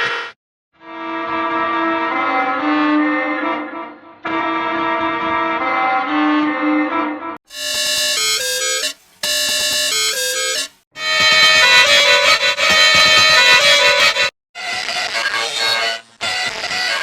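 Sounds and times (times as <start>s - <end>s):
violin-like horn melody: 7.5s - 14.3s.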